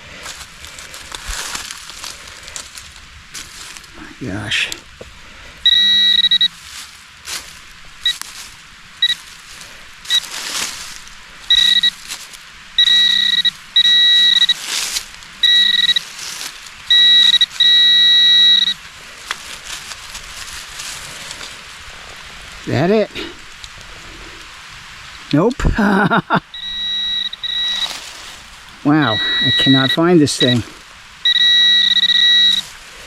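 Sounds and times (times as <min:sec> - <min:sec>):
metal detector beeping: 0:05.6 - 0:06.6, 0:08.0 - 0:08.3, 0:09.0 - 0:09.3, 0:10.0 - 0:10.6, 0:11.4 - 0:12.1, 0:12.8 - 0:18.8, 0:26.5 - 0:32.8.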